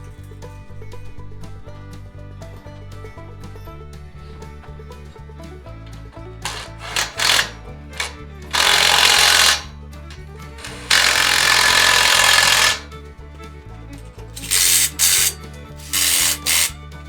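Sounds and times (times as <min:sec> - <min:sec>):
background music: 0:00.0 - 0:17.0
power tool running: 0:06.4 - 0:12.9, 0:14.2 - 0:16.8.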